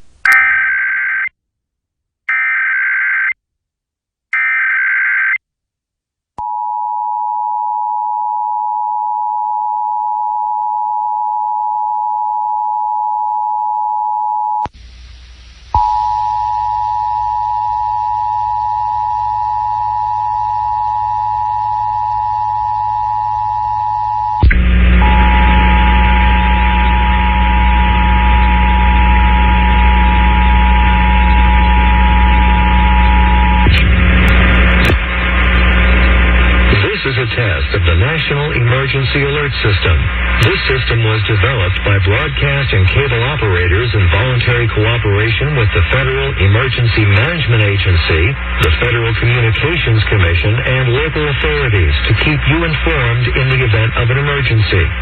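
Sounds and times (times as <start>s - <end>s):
hiss and hum: 14.7s - 55.0s
two-tone attention signal: 15.8s - 33.8s.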